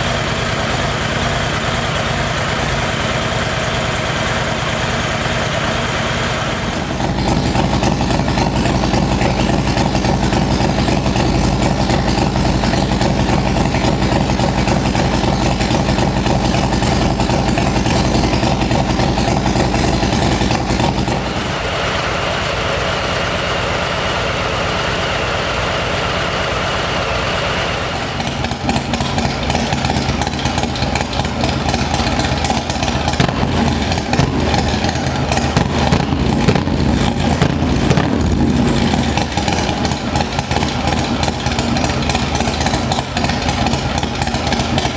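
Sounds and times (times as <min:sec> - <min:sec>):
motorcycle engine idling: 0:00.0 - 0:44.9.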